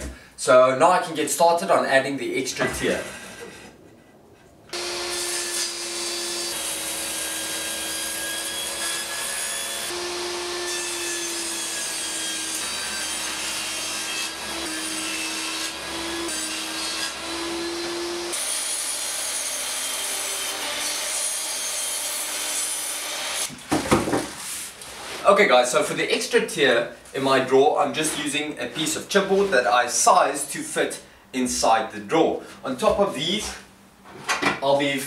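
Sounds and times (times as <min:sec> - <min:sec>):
power saw cutting chipboard: 0:04.7 - 0:23.5.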